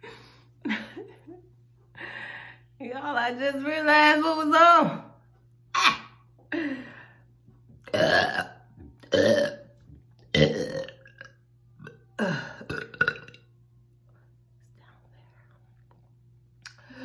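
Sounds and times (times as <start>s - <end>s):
person burping: 5.7s - 6.2s, 7.8s - 13.4s.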